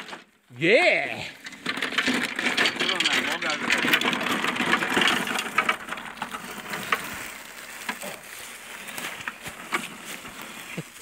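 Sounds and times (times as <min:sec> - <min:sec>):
sharp clicks and knocks: 0:01.4 - 0:08.0
steady outdoor hiss: 0:04.6 - 0:11.0.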